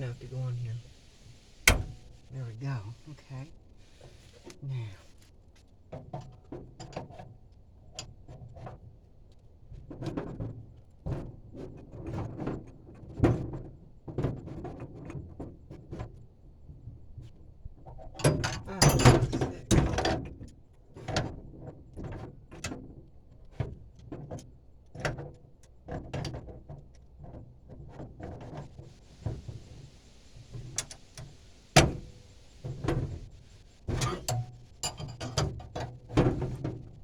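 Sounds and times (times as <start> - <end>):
metal tools clanking and clicking: 18.2 - 20.1, 34.0 - 36.0.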